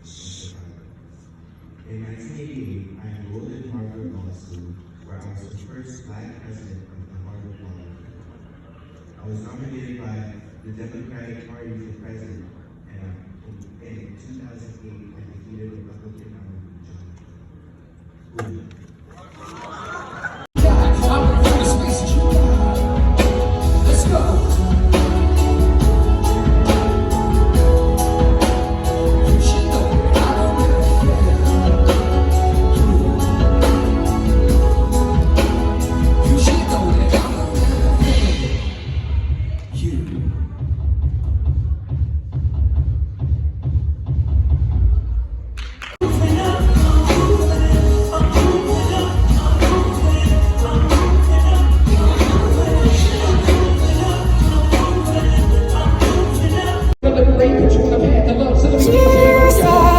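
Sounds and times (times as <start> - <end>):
music with singing: 20.6 - 39.4, 46.0 - 59.9.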